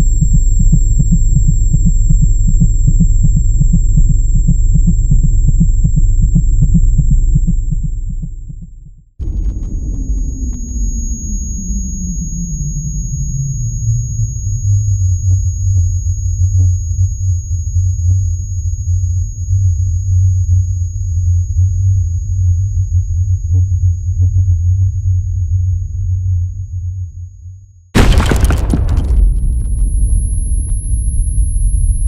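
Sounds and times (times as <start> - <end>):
deep synthesized low pulse: 0.0 - 17.0.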